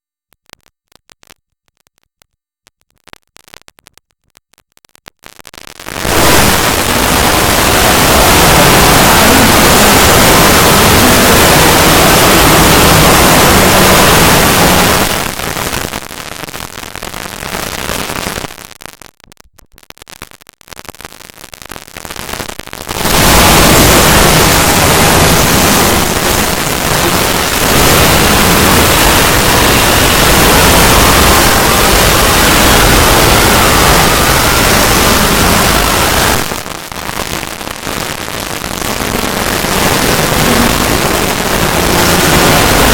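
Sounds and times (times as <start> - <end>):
loud harsh static noise: 5.6 - 18.5, 22.1 - 42.9.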